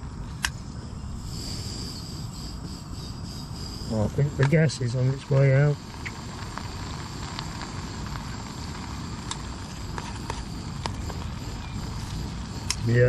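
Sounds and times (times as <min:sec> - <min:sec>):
gas stove burner hissing: 0:00.0 - 0:13.0
food crackling and popping in pan: 0:02.6 - 0:13.0.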